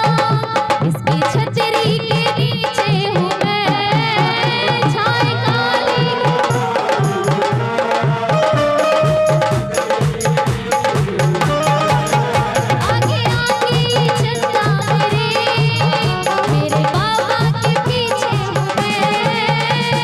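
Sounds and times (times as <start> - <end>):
devotional music with drum beat: 0.0 - 20.0.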